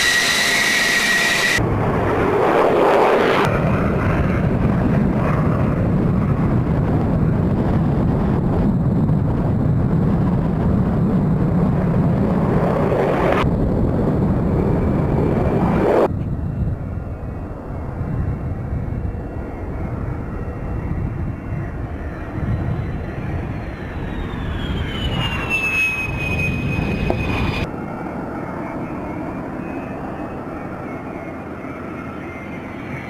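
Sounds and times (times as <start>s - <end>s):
fighter jet engine roar: 0.0s - 33.0s.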